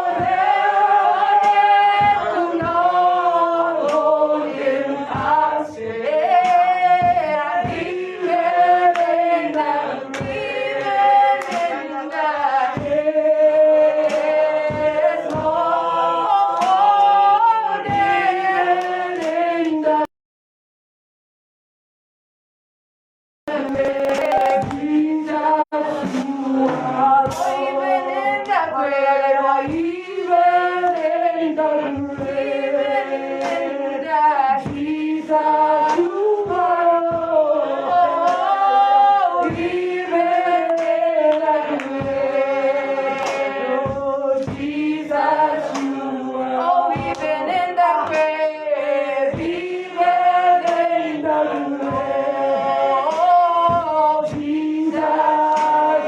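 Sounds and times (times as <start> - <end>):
worshippers singing praise song: 23.5 - 56.0.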